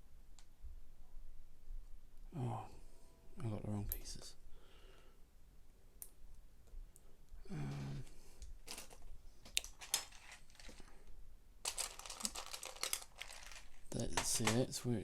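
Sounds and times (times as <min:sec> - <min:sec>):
person humming: 0:07.4 - 0:08.1
plastic pieces clicking and clattering: 0:08.6 - 0:14.7.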